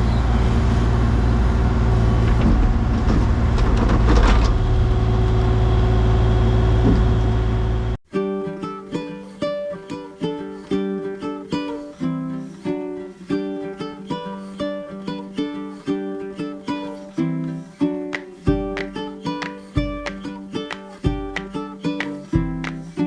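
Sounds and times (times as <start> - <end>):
plucked string instrument melody: 8.1 - 23.0.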